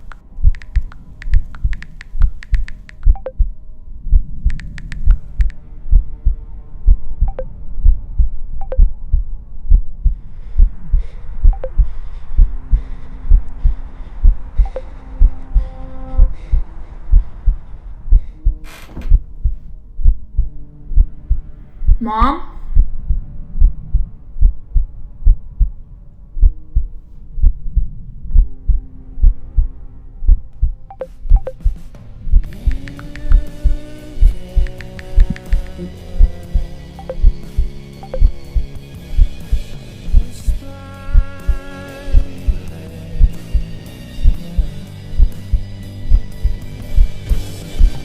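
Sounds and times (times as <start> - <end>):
deep heartbeat-like pulse: 0.0 - 22.0, 22.6 - 48.0
low drone of held tones: 3.1 - 48.0
low held tone: 5.3 - 21.5, 35.8 - 38.7.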